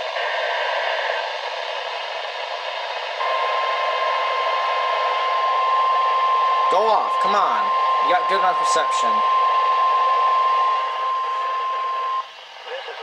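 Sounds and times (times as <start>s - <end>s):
long steady alarm tone: 0.0s - 13.0s
weather radio broadcast: 6.6s - 13.0s.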